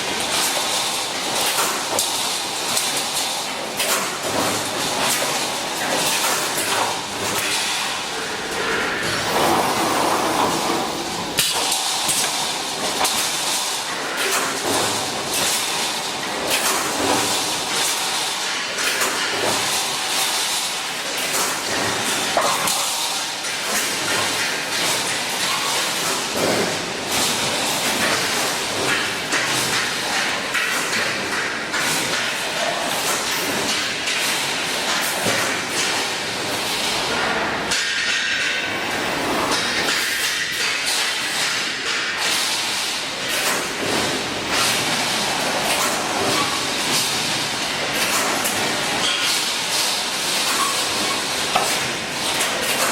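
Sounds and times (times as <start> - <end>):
welding machine clanking: 3.8 - 36.8.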